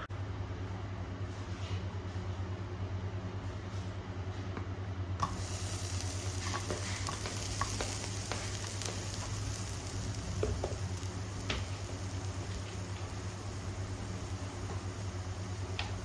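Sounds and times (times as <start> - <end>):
steady low hum: 5.0 - 16.0
food sizzling in a hot pan: 5.2 - 16.0.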